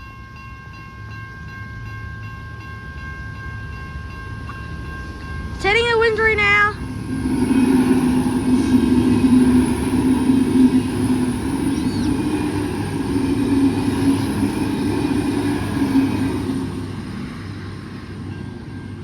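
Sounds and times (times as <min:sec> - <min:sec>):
diesel railcar engine drone: 0:00.0 - 0:19.0
train rail noise: 0:00.0 - 0:19.0.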